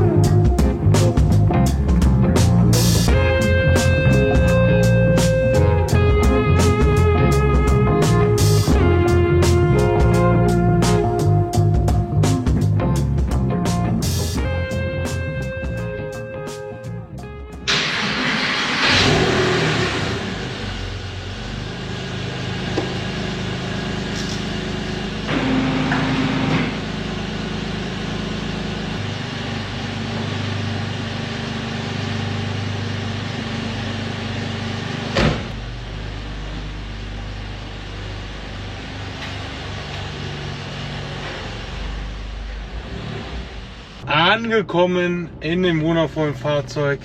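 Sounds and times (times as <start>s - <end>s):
car engine running: 17.5s - 44.1s.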